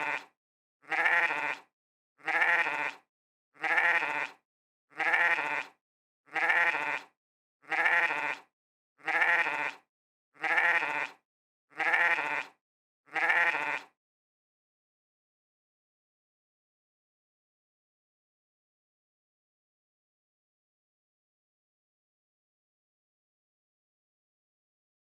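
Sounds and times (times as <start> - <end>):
sheep bleating: 0.0 - 14.0.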